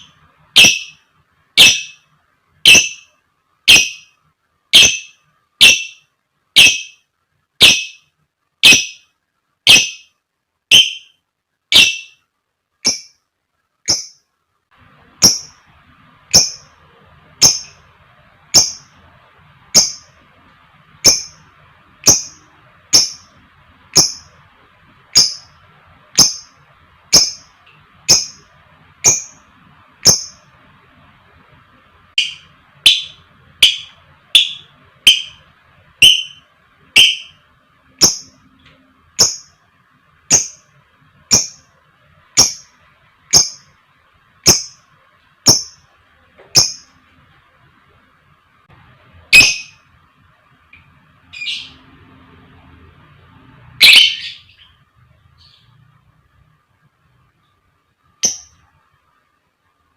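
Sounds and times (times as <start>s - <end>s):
lovebird shrill calls: 0.0s - 1.0s, 1.6s - 2.0s, 2.6s - 3.1s, 3.7s - 7.0s, 7.6s - 9.1s, 9.7s - 12.2s, 12.8s - 13.2s, 13.9s - 14.2s, 15.2s - 15.6s, 16.3s - 16.7s, 17.4s - 17.8s, 18.5s - 18.9s, 19.7s - 20.1s, 21.0s - 21.4s, 22.0s - 23.3s, 24.0s - 24.3s, 25.1s - 25.5s, 26.2s - 27.5s, 28.1s - 28.4s, 29.0s - 29.4s, 30.0s - 30.4s, 32.2s - 35.4s, 36.0s - 37.4s, 38.0s - 38.3s, 39.2s - 39.5s, 40.3s - 40.6s, 42.4s - 42.7s, 43.3s - 43.7s, 44.4s - 44.8s, 45.4s - 45.8s, 46.6s - 46.9s, 49.3s - 49.8s, 53.8s - 54.8s, 58.2s - 58.5s.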